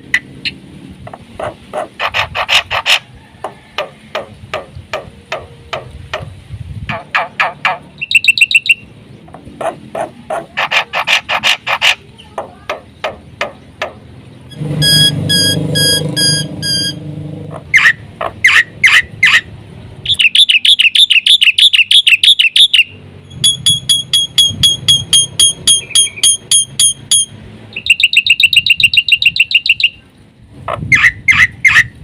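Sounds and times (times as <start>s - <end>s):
bird singing chips and trills: 7.4s - 9.3s, 20.0s - 30.0s.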